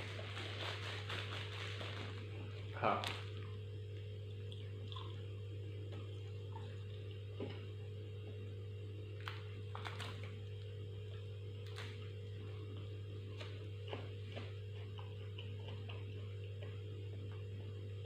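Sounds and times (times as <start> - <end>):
low electrical hum: 0.0 - 18.0
person eating: 4.3 - 5.4, 12.6 - 16.8.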